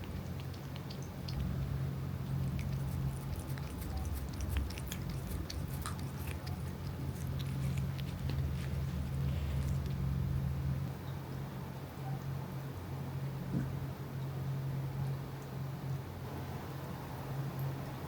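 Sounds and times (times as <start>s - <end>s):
chewing and crunching food: 0.0s - 10.9s
steady low hum: 0.0s - 18.0s.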